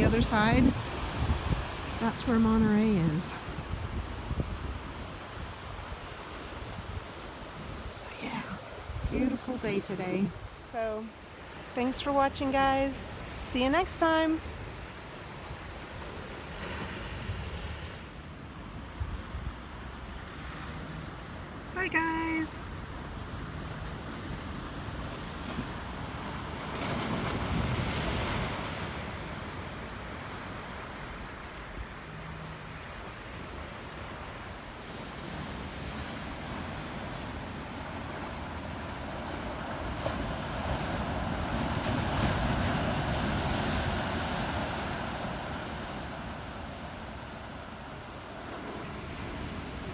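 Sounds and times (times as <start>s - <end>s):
wind on microphone: 0.0s - 10.7s
ocean surf washing in: 0.0s - 49.9s.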